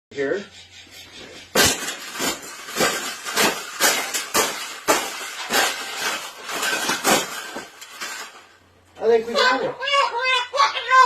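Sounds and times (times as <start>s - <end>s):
wire cage rattling: 1.4s - 8.6s.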